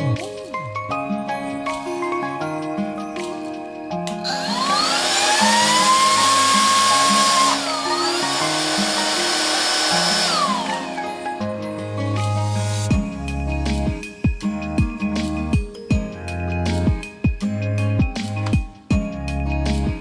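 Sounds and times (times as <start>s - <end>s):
electric air duster motor whining: 4.1s - 11.5s.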